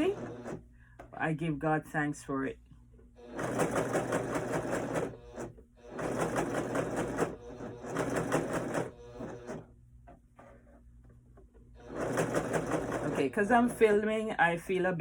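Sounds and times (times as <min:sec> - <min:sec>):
serger sewing machine running: 0:00.0 - 0:00.6, 0:03.2 - 0:09.7, 0:11.8 - 0:14.1.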